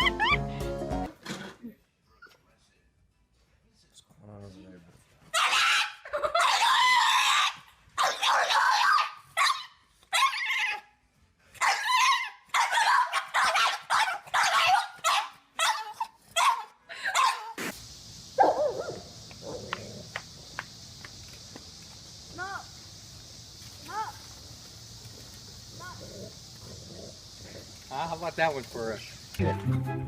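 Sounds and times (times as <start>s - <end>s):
dog screaming cries: 5.3s - 10.9s, 11.6s - 17.6s
hiss: 17.5s - 29.4s.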